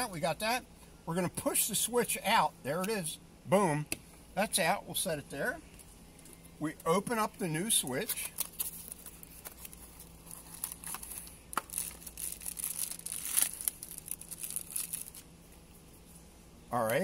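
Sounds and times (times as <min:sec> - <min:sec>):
packaging crinkling and tearing: 0:08.0 - 0:15.3.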